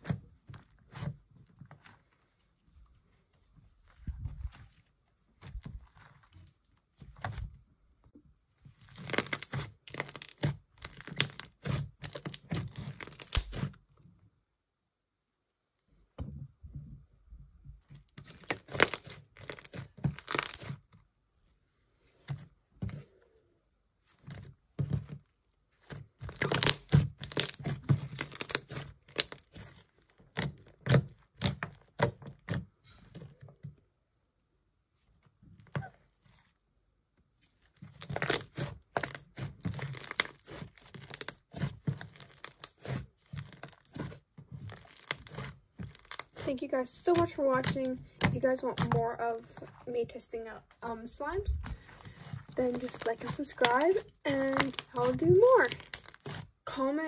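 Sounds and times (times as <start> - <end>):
hands squishing slime: 8.7 - 13.8, 18.1 - 20.9, 24.1 - 32.7, 37.6 - 49.8, 51.4 - 56.6.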